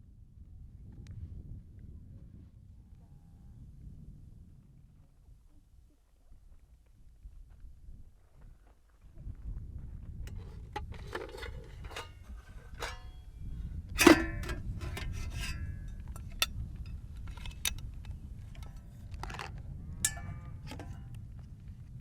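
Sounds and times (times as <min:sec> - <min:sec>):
camping gear clicks and clinks: 0:10.3 - 0:13.2, 0:14.0 - 0:16.5, 0:17.2 - 0:21.2
sharp knock with short ring: 0:20.1 - 0:21.0.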